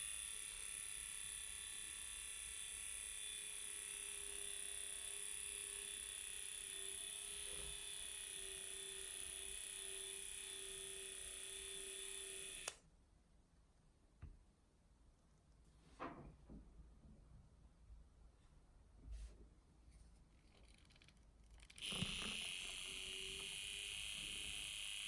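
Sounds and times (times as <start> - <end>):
electric mixer motor: 0.0 - 12.8, 21.6 - 25.0.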